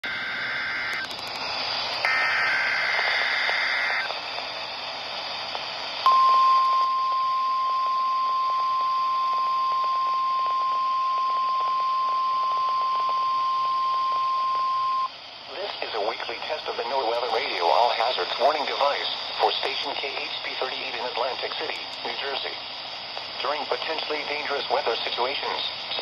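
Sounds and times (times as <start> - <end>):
radio static hiss: 0.0 - 26.0
steady warning alarm tone: 2.0 - 4.1
weather radio broadcast: 2.0 - 4.6, 7.9 - 26.0.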